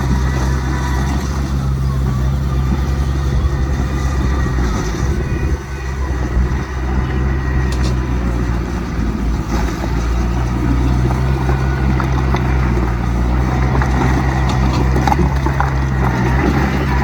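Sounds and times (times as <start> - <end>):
heavy machinery diesel engine: 0.0 - 17.0
clicks and clanks: 6.5 - 17.0.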